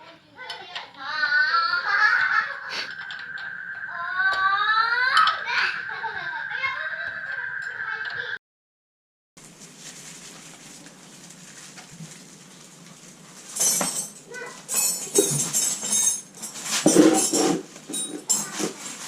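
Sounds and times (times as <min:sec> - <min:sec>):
metal tools clinking and clattering: 0:13.5 - 0:19.0.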